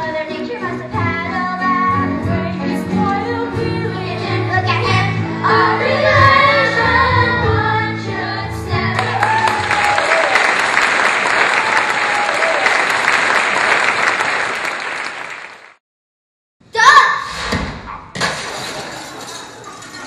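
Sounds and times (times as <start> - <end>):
children singing: 0.0 - 9.2.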